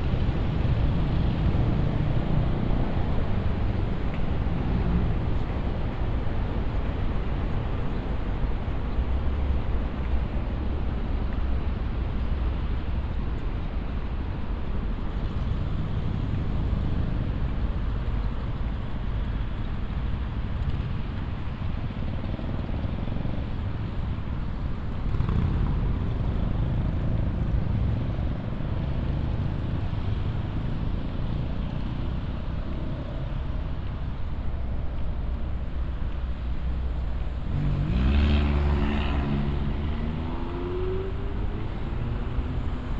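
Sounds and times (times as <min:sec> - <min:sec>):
passing cars rumble: 0:00.0 - 0:42.9
vehicle passing: 0:37.4 - 0:42.9.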